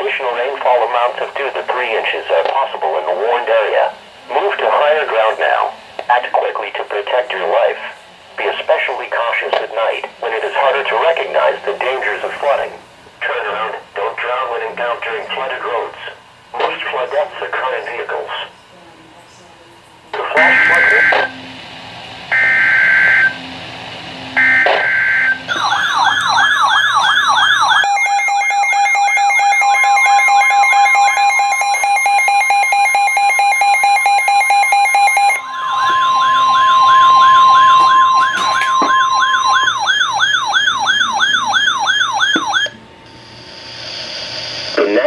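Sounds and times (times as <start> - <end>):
steady attention tone: 20.2 - 45.0
digital data bursts: 20.3 - 21.4, 22.3 - 23.4, 24.3 - 45.0
warbling siren-like alert tone: 20.4 - 21.6, 22.2 - 42.8.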